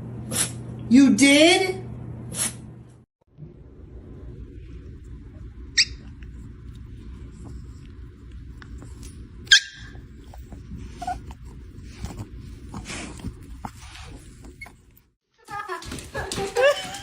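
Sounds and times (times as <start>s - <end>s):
steady low rumble: 3.3s - 9.4s
dog sounds: 5.7s - 15.0s.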